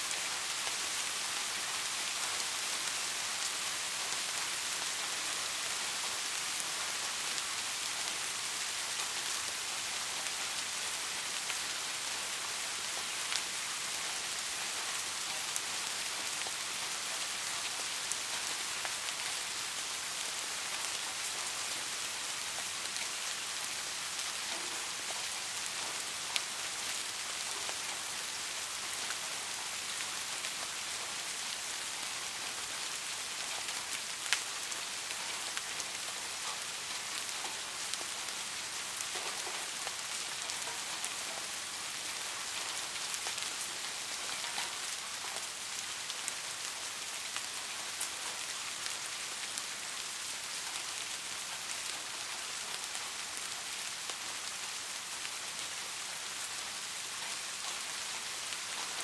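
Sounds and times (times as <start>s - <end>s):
steady rain hiss: 0.0s - 59.0s.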